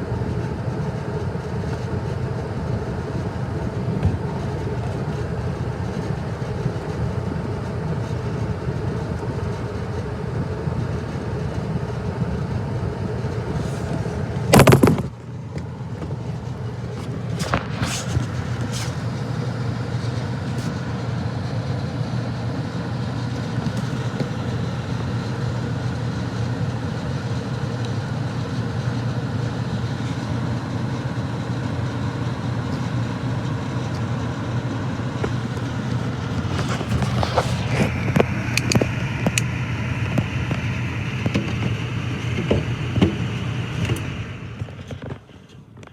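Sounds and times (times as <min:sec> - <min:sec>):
gas furnace humming: 0:00.0 - 0:45.9
sudden loud noise: 0:14.5 - 0:15.2.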